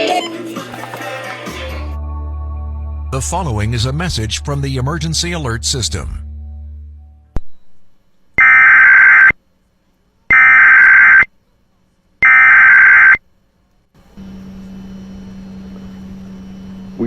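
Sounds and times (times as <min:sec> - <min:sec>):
digital data tone bursts: 0:08.4 - 0:09.4, 0:10.3 - 0:11.3, 0:12.2 - 0:13.2.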